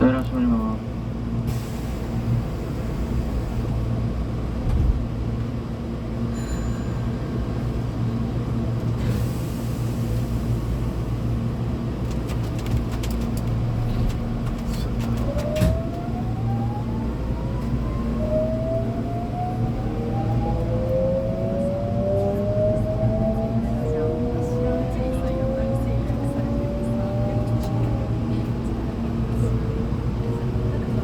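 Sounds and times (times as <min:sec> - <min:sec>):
electric train rising whine: 0:15.2 - 0:28.2.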